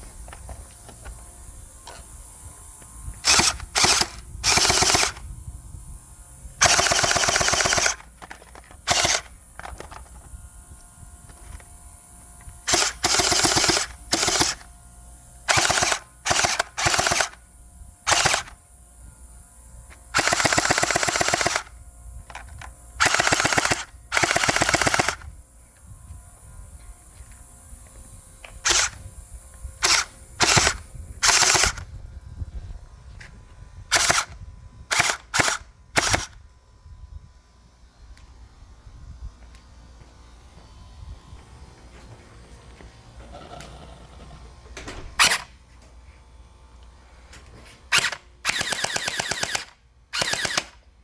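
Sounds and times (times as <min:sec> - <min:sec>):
gel blaster rapid firing: 0:03.2 - 0:05.3, 0:06.6 - 0:08.0, 0:08.8 - 0:09.3, 0:12.7 - 0:14.6, 0:15.5 - 0:17.4, 0:18.1 - 0:18.5, 0:20.2 - 0:21.7, 0:23.0 - 0:25.2, 0:28.6 - 0:29.0, 0:29.8 - 0:31.8, 0:33.9 - 0:36.4, 0:45.2 - 0:45.5, 0:47.9 - 0:50.8.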